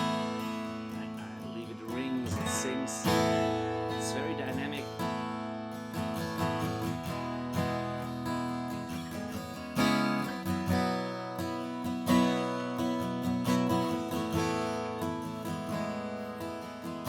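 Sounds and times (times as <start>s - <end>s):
acoustic guitar picked and strummed: 0.0s - 17.0s.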